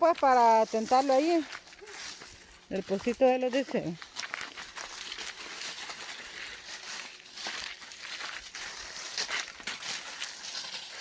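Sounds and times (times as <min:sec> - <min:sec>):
footsteps crunching dry leaves: 0:00.0 - 0:11.0.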